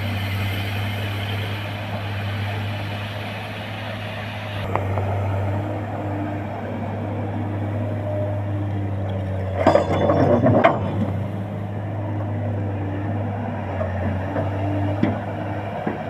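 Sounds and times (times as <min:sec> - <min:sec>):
excavator engine running: 0:00.0 - 0:16.0
metallic clanking and clinking: 0:09.3 - 0:11.3.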